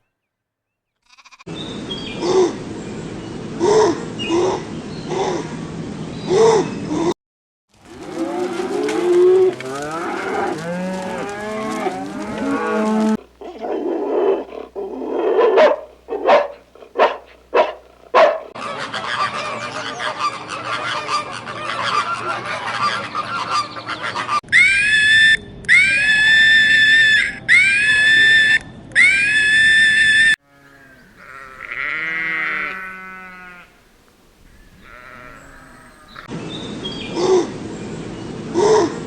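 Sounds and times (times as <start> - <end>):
long high bleats: 1.0 - 1.5, 30.4 - 33.8, 34.8 - 36.0
chorus of animal calls: 7.9 - 33.7, 34.5 - 36.3
flock chatter: 15.4 - 24.4.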